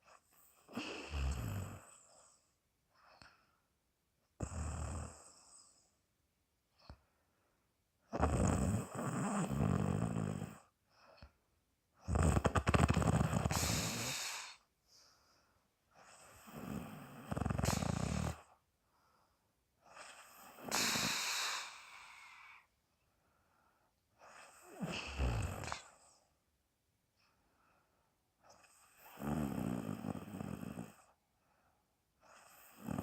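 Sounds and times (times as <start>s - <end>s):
woman snoring: 0.7s - 2.4s, 4.4s - 5.8s, 8.1s - 10.7s, 12.0s - 14.6s, 16.0s - 18.5s, 19.9s - 22.7s, 24.2s - 26.1s, 28.6s - 31.1s, 32.3s - 33.0s.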